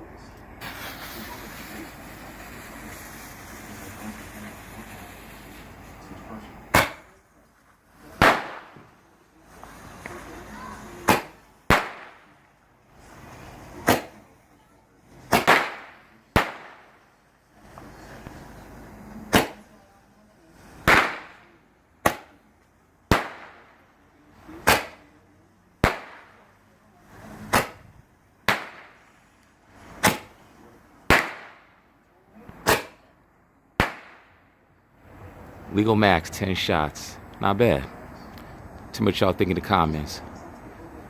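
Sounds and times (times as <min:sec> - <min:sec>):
roman candle bangs: 0:06.7 - 0:07.2, 0:08.2 - 0:08.9, 0:11.0 - 0:12.4, 0:13.8 - 0:14.2, 0:15.3 - 0:17.0, 0:19.3 - 0:19.7, 0:23.1 - 0:23.8, 0:24.6 - 0:25.1, 0:25.8 - 0:26.5, 0:27.4 - 0:27.9, 0:28.5 - 0:29.1, 0:29.8 - 0:30.4, 0:31.1 - 0:31.8.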